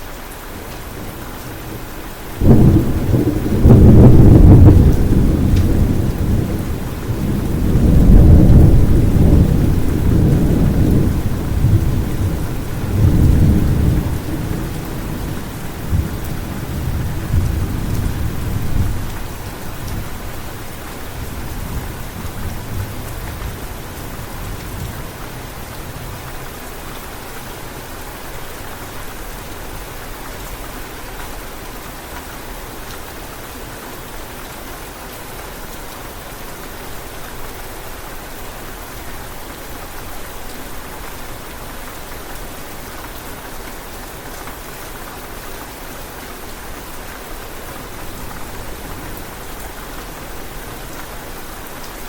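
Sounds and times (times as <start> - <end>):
steady rain: 0.0 - 52.0
thunder rumbling: 2.4 - 26.1.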